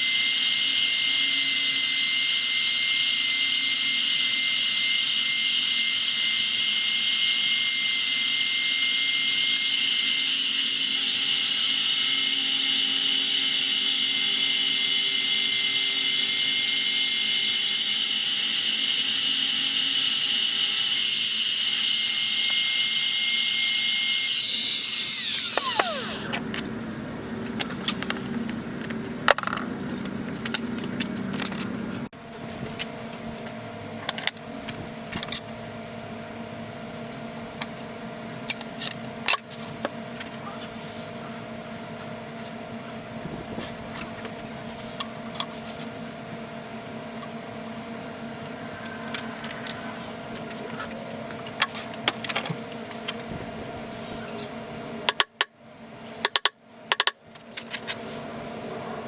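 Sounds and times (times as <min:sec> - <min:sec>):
small power tool running: 0:00.0 - 0:28.6
steady hum: 0:24.2 - 0:39.3, 0:41.2 - 0:55.2
tools clicking and knocking: 0:27.6 - 0:29.7, 0:55.1 - 0:55.5, 0:56.2 - 0:58.0.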